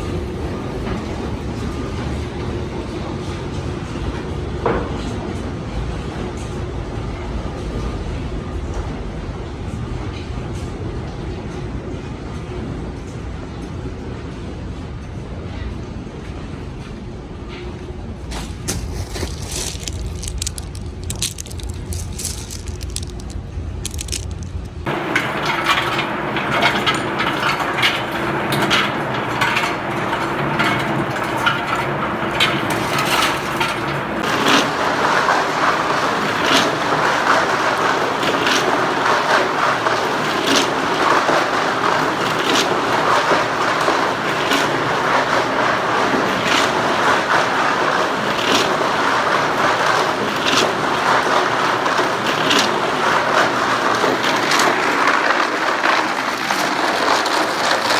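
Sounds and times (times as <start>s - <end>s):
rocks cracking and clattering: 18.3s - 57.9s.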